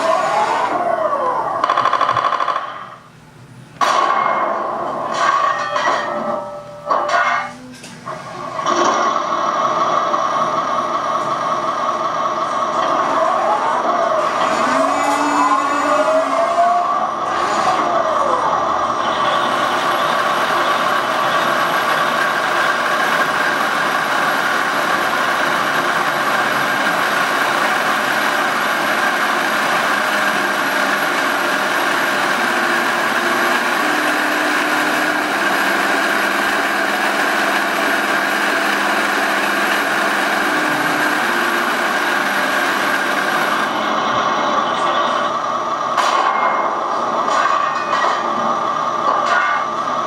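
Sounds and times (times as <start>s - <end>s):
simulated tank engine sound: 0.0s - 50.0s.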